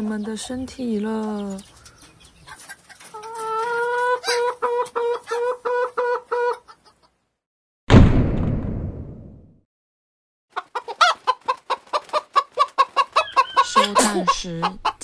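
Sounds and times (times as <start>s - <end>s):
chicken clucking: 0.0s - 7.2s, 10.5s - 15.0s
loud hit with ringing tail: 7.9s - 9.4s.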